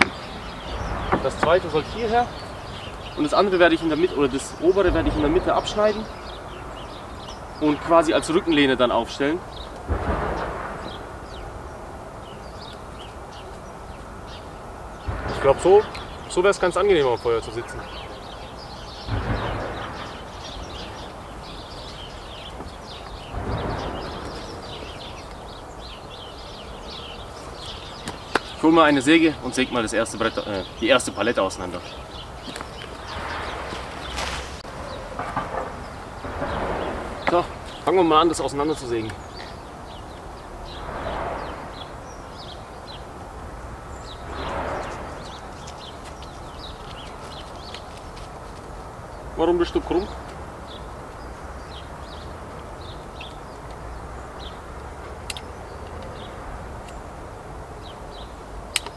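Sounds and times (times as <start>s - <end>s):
birds chirping: 0.0s - 58.9s
rush of noise: 39.7s - 46.8s.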